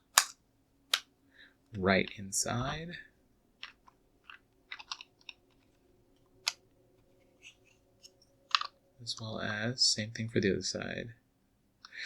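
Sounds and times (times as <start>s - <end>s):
plastic bricks clicking: 0.0s - 1.1s, 3.6s - 6.7s, 7.4s - 8.8s.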